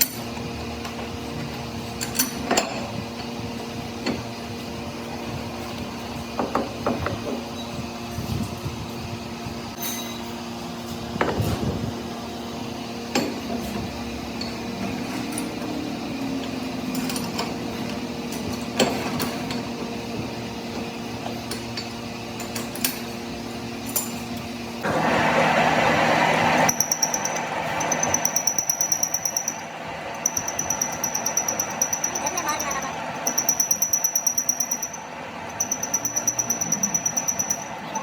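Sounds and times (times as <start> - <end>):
steady machine hum: 0.0 - 38.0
tools clinking on steel: 16.4 - 19.7, 21.5 - 24.5, 30.2 - 38.0.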